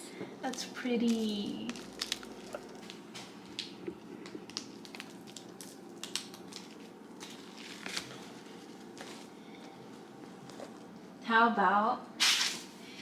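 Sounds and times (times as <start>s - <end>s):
slime squeezed crackling: 1.0s - 3.8s, 4.4s - 6.9s.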